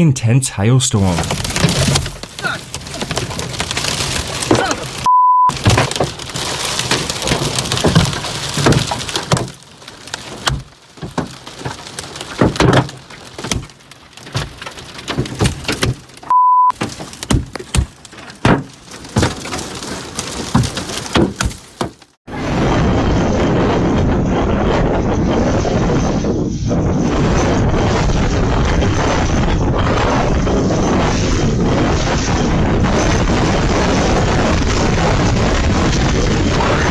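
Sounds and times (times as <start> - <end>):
hail pounding a car: 1.0 - 22.2
steady beep tone: 5.1 - 5.5, 16.3 - 16.7.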